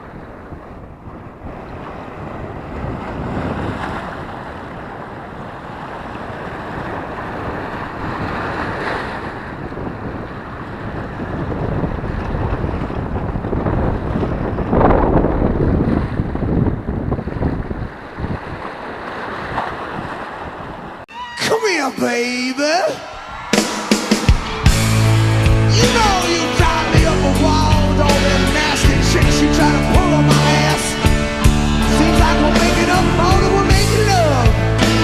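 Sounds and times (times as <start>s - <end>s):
water lapping and splashing: 0.0s - 21.1s
wind buffeting microphone: 0.0s - 21.1s.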